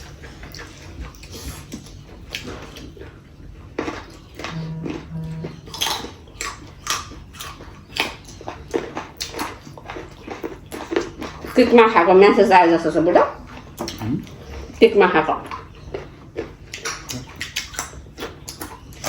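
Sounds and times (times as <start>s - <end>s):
food being chewed: 0.0s - 12.4s, 13.4s - 14.8s, 15.4s - 19.0s
short low hums: 4.4s - 6.0s.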